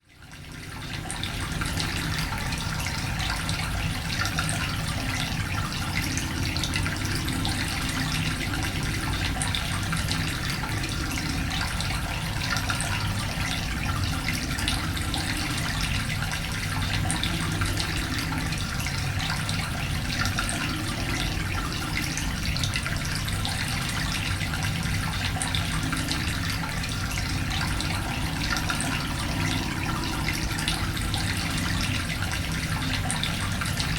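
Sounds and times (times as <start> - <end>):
trickling water: 0.0 - 33.9
water drips: 0.2 - 33.9
low rumble: 25.4 - 33.0.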